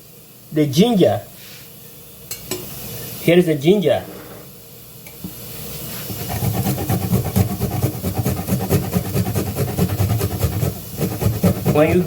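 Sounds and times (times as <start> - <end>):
ginger grating on grater: 6.1 - 12.0.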